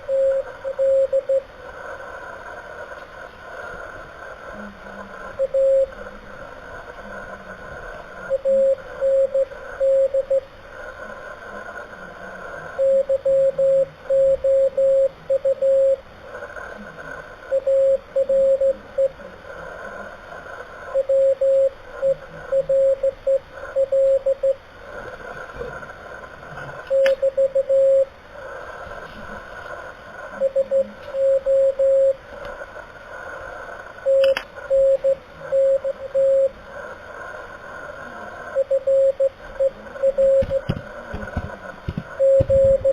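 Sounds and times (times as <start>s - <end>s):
morse code tone: 0.0s - 1.4s, 5.4s - 6.0s, 8.3s - 10.5s, 12.8s - 16.0s, 17.5s - 19.2s, 20.9s - 24.6s, 26.8s - 28.1s, 30.4s - 32.2s, 34.0s - 36.6s, 38.6s - 42.9s
radio static and hiss: 0.0s - 42.9s.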